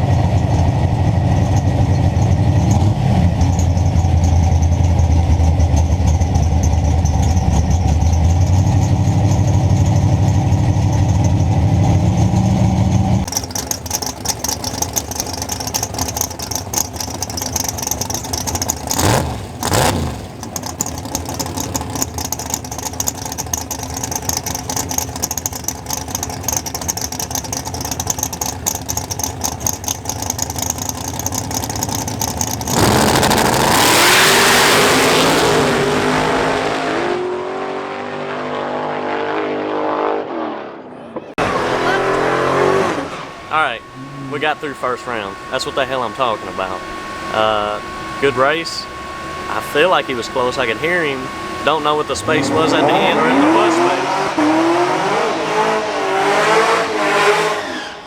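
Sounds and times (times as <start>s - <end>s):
loud car engine running: 0.0s - 37.7s, 41.4s - 57.6s
hissing engine and rushing air: 41.4s - 54.9s
pitch sweep: 41.4s - 57.4s.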